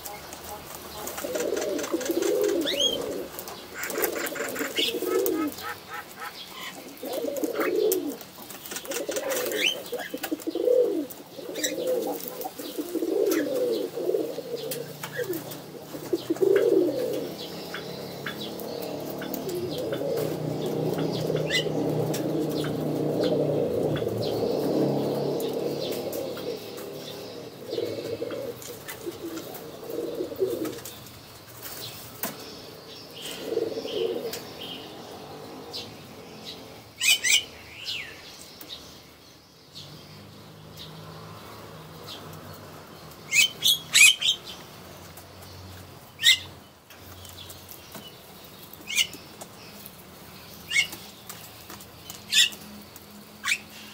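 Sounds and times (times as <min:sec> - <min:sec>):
pigeons cooing: 0:00.0 - 0:38.0, 0:41.5 - 0:44.7, 0:46.0 - 0:53.9.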